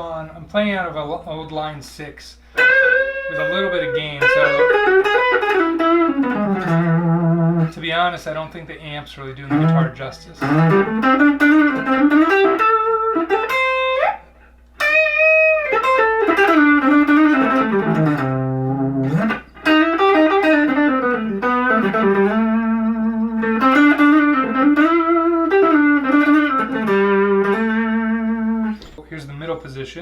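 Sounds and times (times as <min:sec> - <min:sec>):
faint steady hum: 0:00.0 - 0:30.0
electric guitar single-note line: 0:02.6 - 0:07.7, 0:09.5 - 0:14.2, 0:14.8 - 0:28.8.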